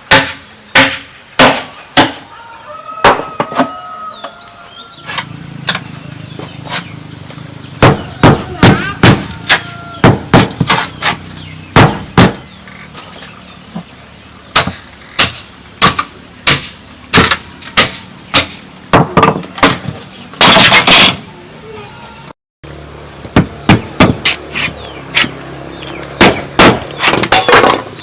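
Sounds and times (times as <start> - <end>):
hand tool striking bamboo: 0.1 - 2.2, 7.8 - 11.2, 14.5 - 21.2, 23.4 - 25.4.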